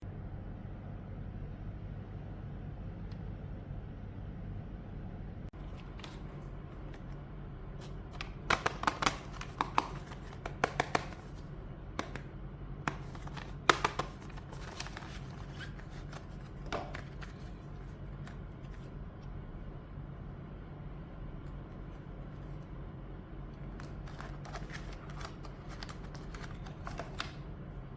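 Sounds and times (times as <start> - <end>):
low steady hum: 0.0 - 27.9
hard objects clicking and tapping: 8.2 - 11.4, 12.9 - 15.2.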